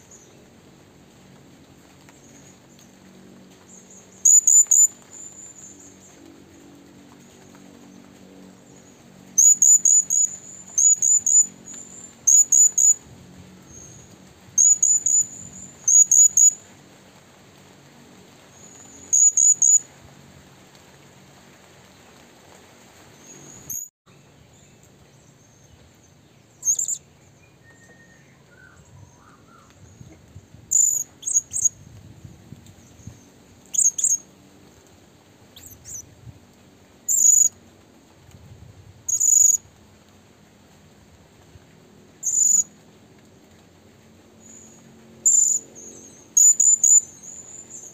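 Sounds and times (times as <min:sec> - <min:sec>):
bird chirping: 0:03.7 - 0:06.2, 0:08.7 - 0:13.0, 0:13.7 - 0:16.6, 0:18.6 - 0:19.8, 0:26.4 - 0:29.8, 0:30.7 - 0:31.7, 0:32.9 - 0:34.2, 0:35.6 - 0:36.0, 0:37.1 - 0:37.5, 0:42.2 - 0:42.7, 0:44.4 - 0:47.9.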